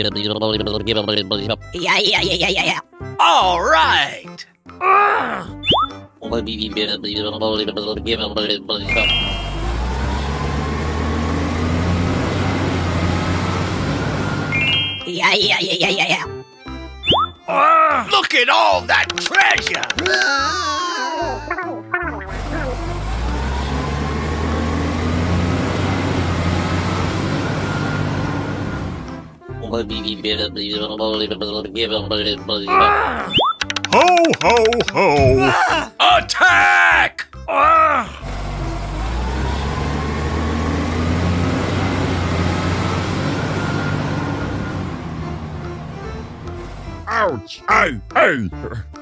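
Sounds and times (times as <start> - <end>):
truck engine rumbling: 6.5 - 17.0, 21.4 - 32.5, 38.0 - 49.0
road noise: 6.8 - 15.4, 21.8 - 32.6, 38.0 - 48.0.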